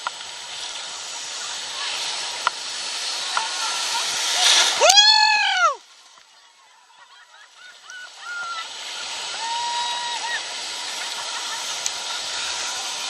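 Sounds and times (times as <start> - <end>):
sea waves breaking: 0.0 - 13.0
loud high cry: 4.8 - 5.8, 9.3 - 10.5.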